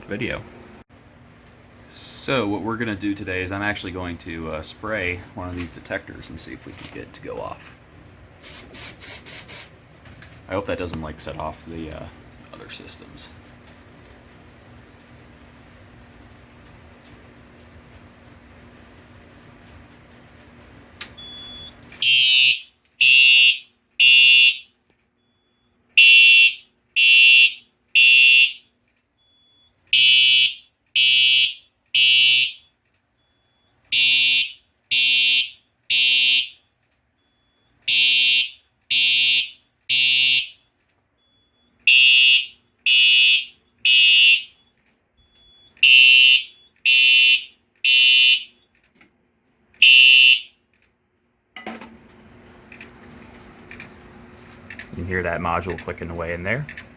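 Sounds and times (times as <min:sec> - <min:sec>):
fire alarm horn blasts: 0:21.2 - 0:48.7, 0:49.8 - 0:50.6.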